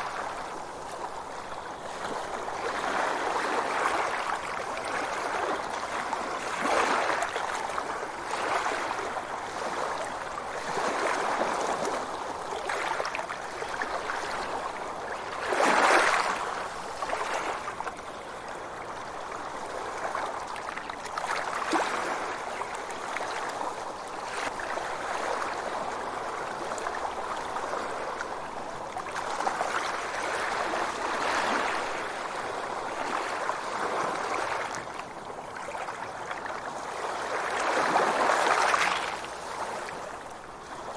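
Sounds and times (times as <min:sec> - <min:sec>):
sea waves washing ashore: 0:24.4 - 0:40.9.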